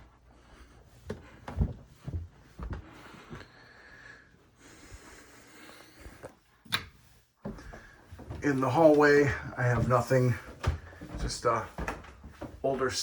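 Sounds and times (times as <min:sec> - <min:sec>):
faint movement noise: 0:00.0 - 0:13.0
footsteps climbing stairs: 0:01.0 - 0:03.5, 0:07.4 - 0:13.0.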